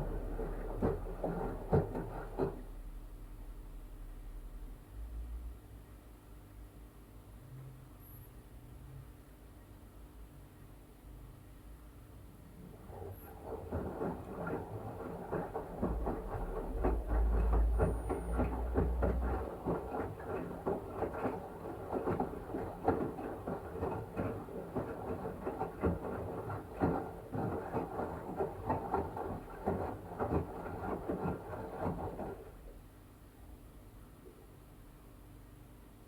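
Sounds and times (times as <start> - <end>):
blanket slapping and water sloshing: 0.0 - 2.6, 12.5 - 32.7
washing machine drum turning: 0.0 - 2.7, 12.6 - 32.6.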